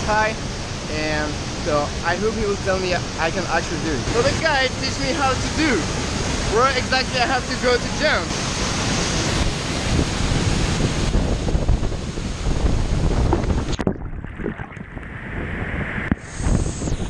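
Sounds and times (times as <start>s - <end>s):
waterfall roaring: 0.0s - 13.8s
wind buffeting microphone: 8.1s - 17.0s.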